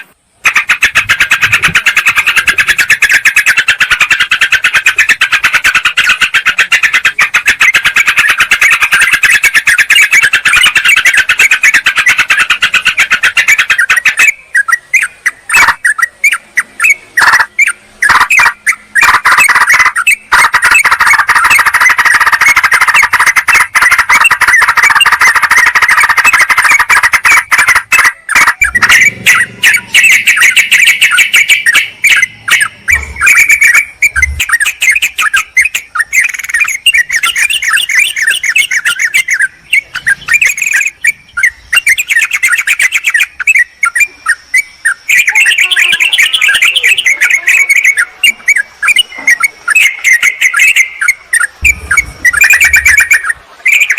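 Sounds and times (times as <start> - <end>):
bulbuls chattering calls: 0.0 - 53.9.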